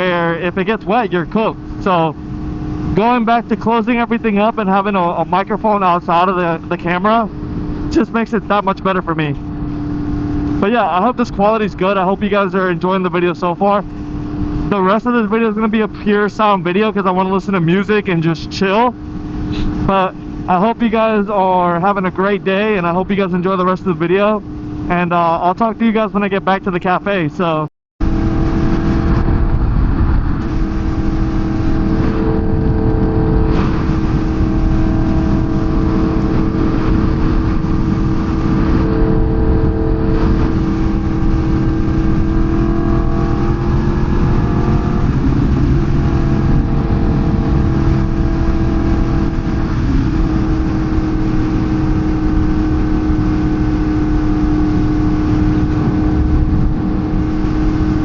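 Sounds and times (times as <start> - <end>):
motorcycle engine cruising: 0.0 - 58.0
wind noise: 28.0 - 58.0.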